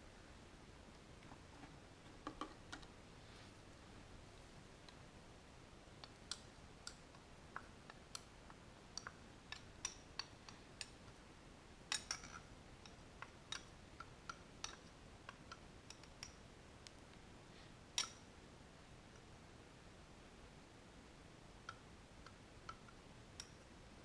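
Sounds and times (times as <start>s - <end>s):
small hard objects clicking and tapping: 2.2s - 2.9s, 6.0s - 11.2s, 11.9s - 17.1s, 18.0s - 18.2s.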